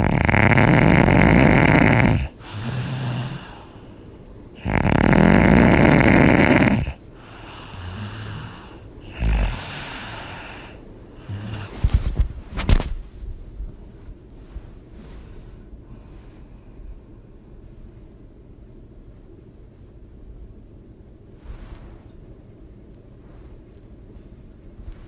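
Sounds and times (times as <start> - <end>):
person snoring: 0.0 - 3.8, 4.6 - 12.2
breathing: 2.2 - 4.3, 6.8 - 12.6, 14.4 - 18.2, 21.4 - 22.2.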